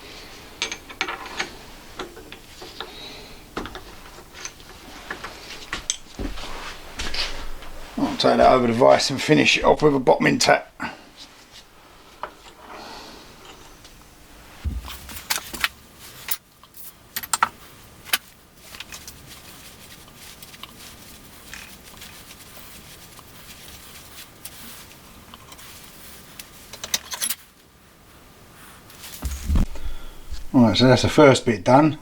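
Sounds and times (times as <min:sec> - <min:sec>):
metal clinks and knocks: 0:00.6 - 0:02.9.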